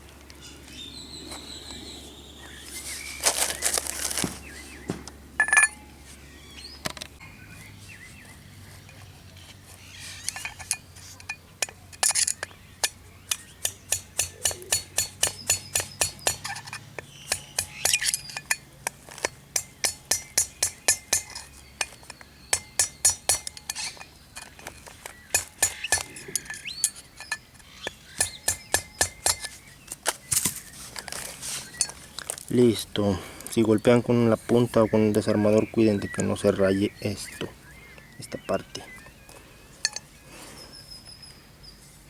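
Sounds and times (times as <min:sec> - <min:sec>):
hammer striking steel socket: 0:05.4 - 0:05.8, 0:10.2 - 0:24.5.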